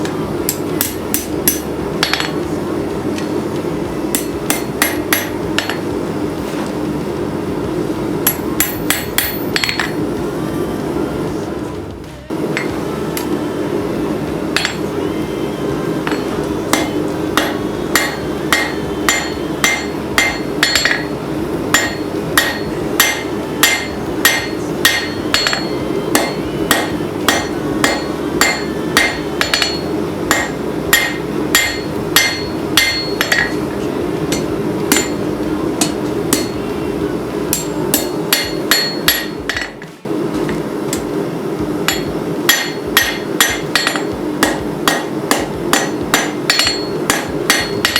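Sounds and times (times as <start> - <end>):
low hum: 0.0 - 47.9
hammer ringing on anvil: 0.5 - 2.4, 4.1 - 5.9, 8.2 - 10.0, 14.5 - 14.9, 16.0 - 36.7, 37.5 - 39.9, 41.8 - 47.9.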